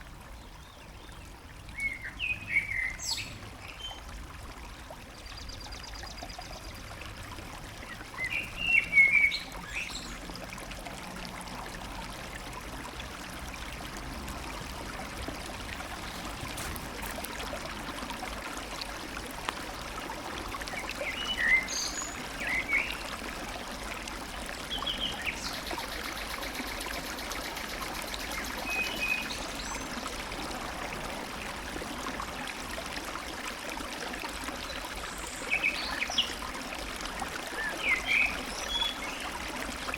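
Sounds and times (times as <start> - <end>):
stream running: 0.0 - 39.9.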